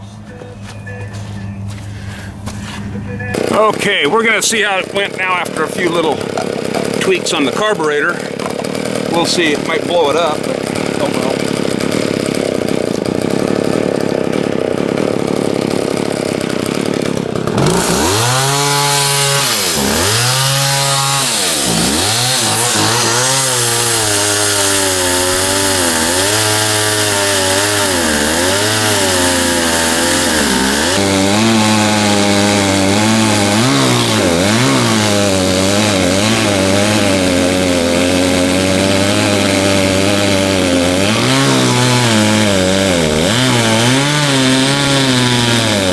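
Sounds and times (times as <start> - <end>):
chainsaw engine revving: 3.0 - 45.9.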